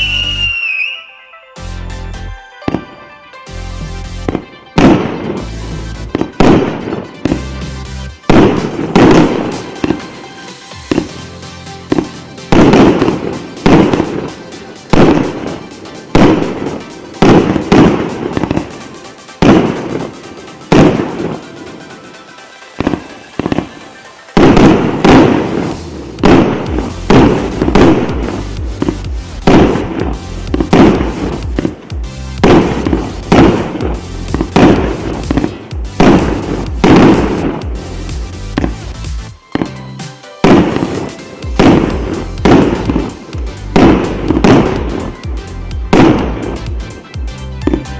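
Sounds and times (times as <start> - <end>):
fireworks bangs: 2.6 - 3.0, 4.2 - 7.6, 8.2 - 39.8, 40.4 - 47.0.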